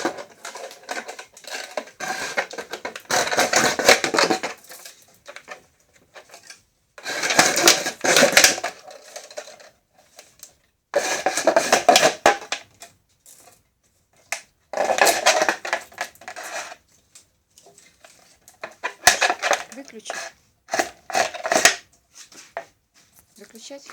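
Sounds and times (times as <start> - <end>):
rope twisting machine clattering: 0.0 - 4.6, 18.6 - 21.8.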